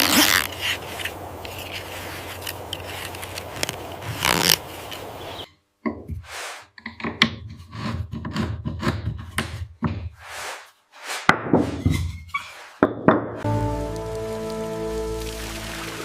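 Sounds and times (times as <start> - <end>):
wood scraping and rubbing: 6.1 - 13.0.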